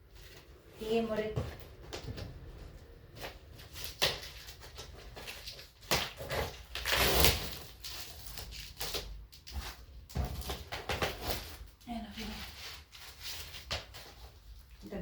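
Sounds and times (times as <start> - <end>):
packaging scraping and rustling: 3.2 - 14.6.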